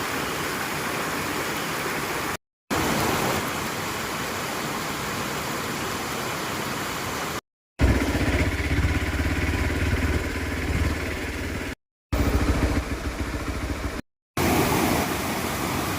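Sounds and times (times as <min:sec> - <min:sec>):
vehicle engine running: 0:07.8 - 0:14.0.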